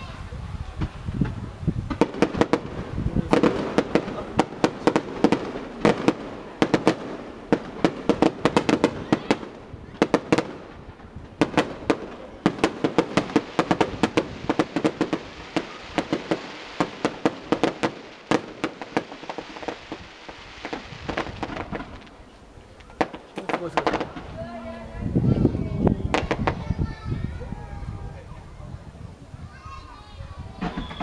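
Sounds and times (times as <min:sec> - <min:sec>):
fireworks crackling: 0:00.0 - 0:31.0.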